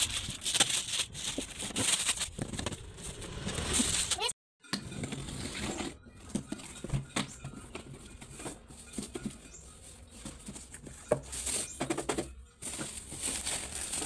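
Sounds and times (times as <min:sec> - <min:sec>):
package rustling: 0:00.0 - 0:03.0, 0:12.6 - 0:14.0.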